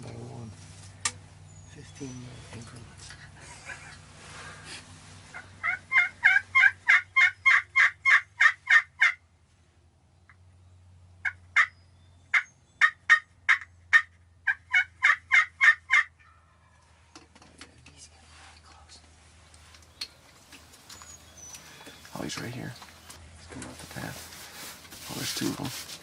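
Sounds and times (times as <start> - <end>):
turkey yelping: 5.2 - 9.2, 11.2 - 16.9.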